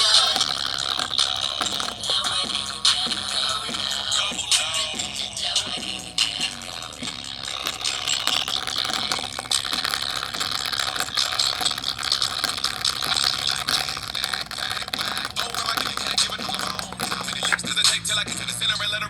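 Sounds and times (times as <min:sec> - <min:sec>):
rapid mechanical clicking and rattling: 0:07.3 - 0:17.8.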